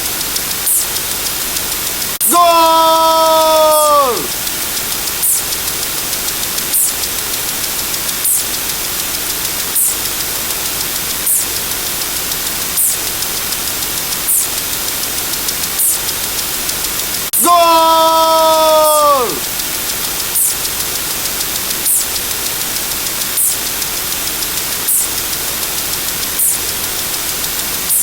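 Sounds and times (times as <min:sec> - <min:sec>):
static hiss: 0:00.0 - 0:28.0.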